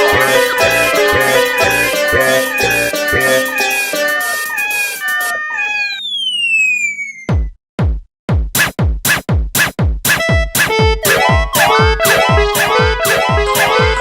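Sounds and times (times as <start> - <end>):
drum machine kick beat: 0.0 - 4.5, 7.3 - 14.0
short beeping synth notes: 0.0 - 7.2, 10.7 - 14.0
falling synth sweep: 0.0 - 7.3.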